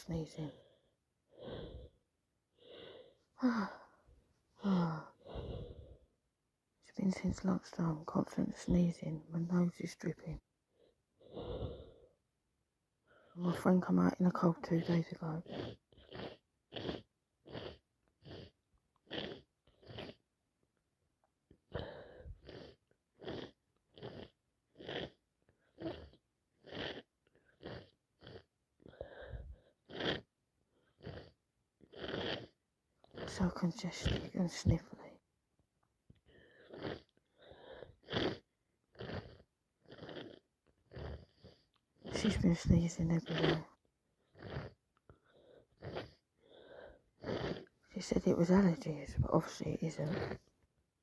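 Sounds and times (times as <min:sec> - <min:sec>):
person sniffing through congested nose: 0:01.4 - 0:02.0, 0:02.6 - 0:03.6, 0:04.6 - 0:06.1, 0:11.2 - 0:12.0, 0:15.4 - 0:20.2, 0:29.0 - 0:30.2, 0:31.9 - 0:32.5, 0:36.5 - 0:38.4, 0:43.2 - 0:43.6, 0:44.4 - 0:44.8, 0:45.4 - 0:47.7
person sniffing through blocked nose: 0:37.6 - 0:38.4, 0:45.8 - 0:47.7.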